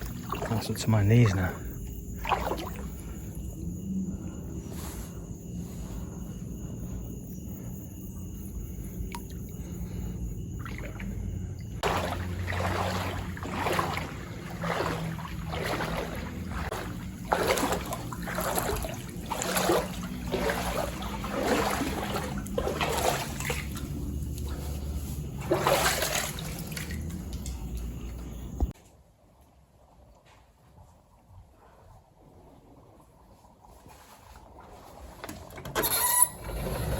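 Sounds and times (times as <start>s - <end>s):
wading through water splashing: 0.0s - 28.7s.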